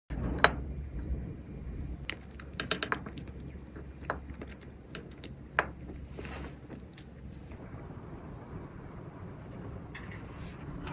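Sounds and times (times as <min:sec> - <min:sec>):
kitchen utensils clicking and tapping: 0:02.1 - 0:05.8
soft rustle: 0:05.9 - 0:07.6.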